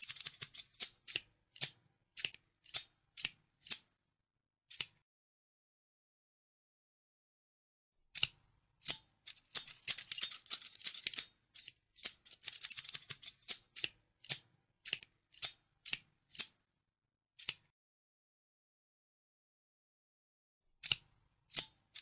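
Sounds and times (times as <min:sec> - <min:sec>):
scissors snipping: 0:00.0 - 0:03.9, 0:04.7 - 0:05.0, 0:08.1 - 0:16.6, 0:17.4 - 0:17.7, 0:20.8 - 0:22.0.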